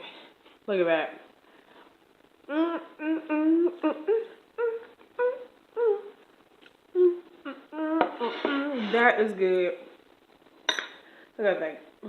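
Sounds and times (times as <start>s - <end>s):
woman humming with enjoyment: 2.5s - 6.2s, 6.9s - 9.0s.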